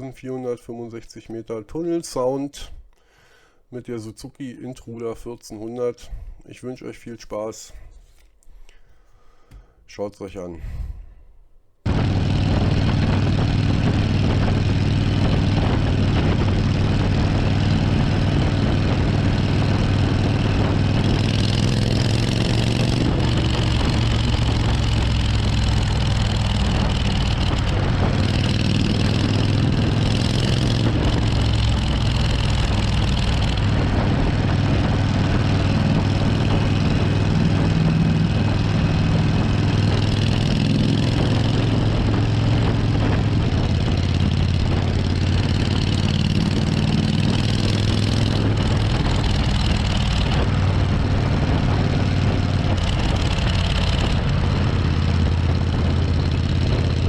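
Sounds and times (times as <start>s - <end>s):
motorcycle engine running: 11.8s - 57.0s.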